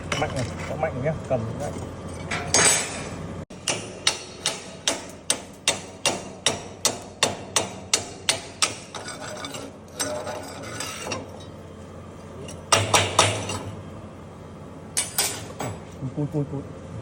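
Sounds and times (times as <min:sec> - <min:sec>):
hammer striking metal: 0:02.3 - 0:09.1, 0:12.7 - 0:13.7.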